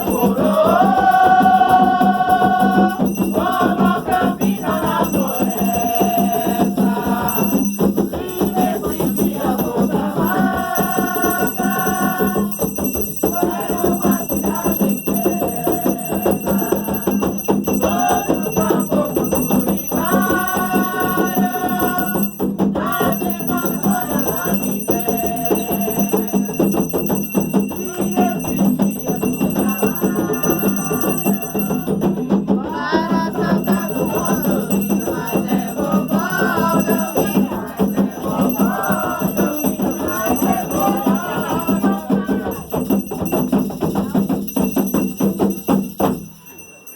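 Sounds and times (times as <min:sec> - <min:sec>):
group of voices chanting: 0:00.0 - 0:07.6, 0:08.2 - 0:12.5, 0:13.3 - 0:17.0, 0:17.8 - 0:26.2, 0:32.6 - 0:42.8
hand percussion: 0:00.0 - 0:46.9.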